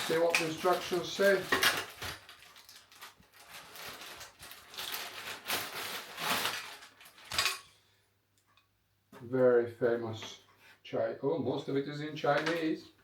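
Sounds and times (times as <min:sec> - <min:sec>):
paper rustling and crinkling: 0:00.0 - 0:07.4.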